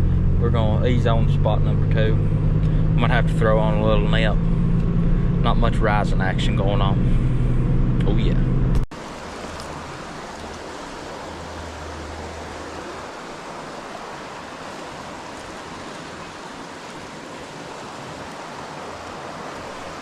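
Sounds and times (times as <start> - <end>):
creek water over rocks: 8.9 - 20.0.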